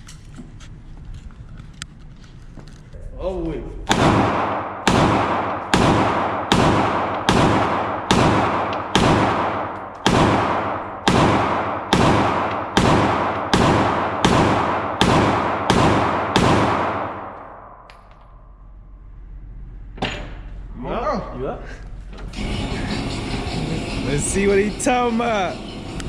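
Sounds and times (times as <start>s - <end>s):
handgun shots echoing: 3.9s - 18.2s.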